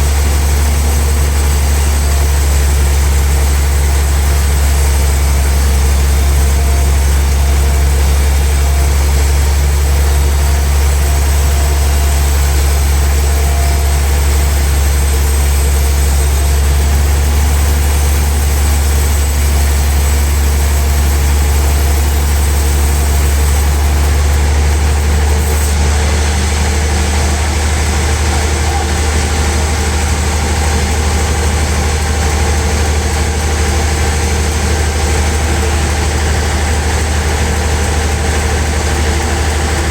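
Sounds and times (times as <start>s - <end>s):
sawmill machinery humming: 0.0s - 39.9s.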